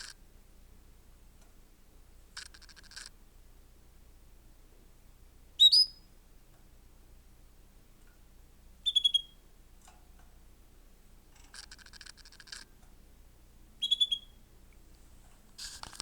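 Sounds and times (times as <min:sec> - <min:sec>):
faint buzzy rattle: 0:00.0 - 0:00.2, 0:02.3 - 0:03.2, 0:11.3 - 0:13.0, 0:14.9 - 0:16.0
canary chirping trills: 0:02.4 - 0:03.1, 0:05.6 - 0:06.1, 0:08.8 - 0:09.4, 0:11.5 - 0:12.7, 0:13.8 - 0:14.5.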